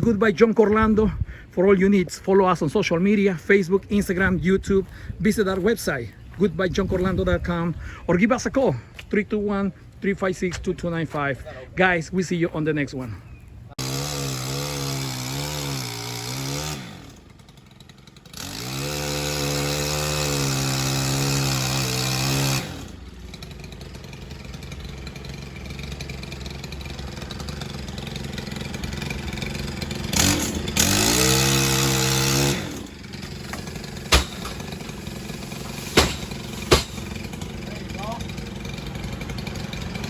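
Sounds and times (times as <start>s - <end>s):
petrol engine revving: 13.8s - 40.0s.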